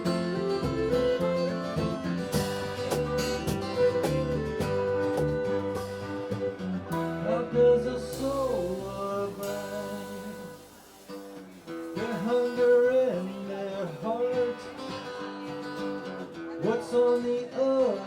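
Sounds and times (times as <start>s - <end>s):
low bass notes: 0.0s - 10.8s
acoustic string band playing: 0.0s - 16.5s
strummed acoustic guitar: 0.0s - 18.0s.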